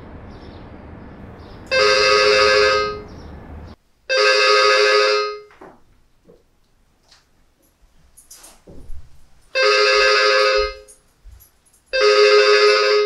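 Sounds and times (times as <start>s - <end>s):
steady background hum: 0.0s - 13.0s
intercom ring tone: 1.7s - 3.1s, 4.1s - 5.5s, 9.6s - 10.9s, 12.0s - 13.0s.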